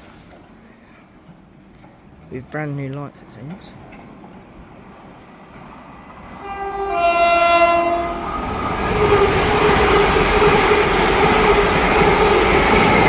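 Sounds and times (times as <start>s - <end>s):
train running noise: 0.0s - 13.0s
train two-tone horn: 6.4s - 10.4s.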